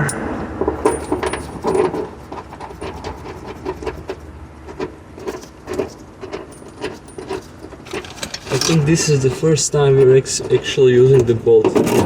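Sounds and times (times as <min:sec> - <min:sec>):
small metal parts clinking: 0:00.8 - 0:02.9, 0:05.2 - 0:12.0.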